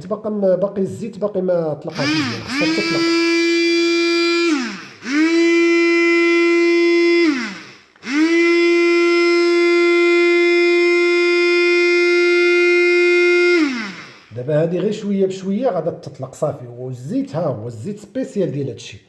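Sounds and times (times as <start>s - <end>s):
small electric motor whining: 1.9s - 14.4s.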